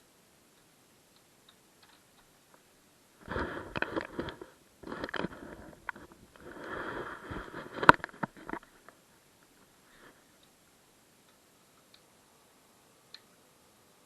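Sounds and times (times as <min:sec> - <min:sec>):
hard plastic scraping and rubbing: 0:03.2 - 0:09.0.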